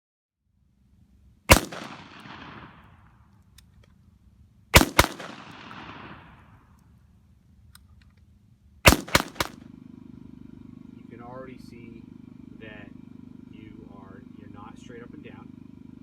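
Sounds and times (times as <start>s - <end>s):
rifle shots with echo: 1.5s - 3.3s, 4.7s - 6.8s, 8.8s - 9.7s.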